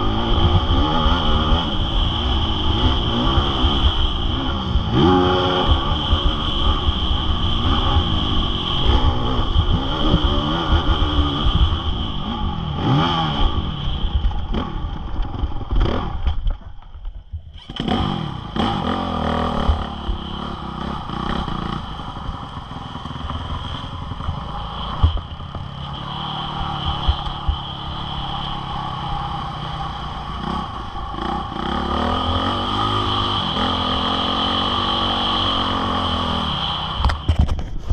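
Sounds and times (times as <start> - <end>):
motocross bike engine revving: 0.0 - 16.5, 17.5 - 37.6.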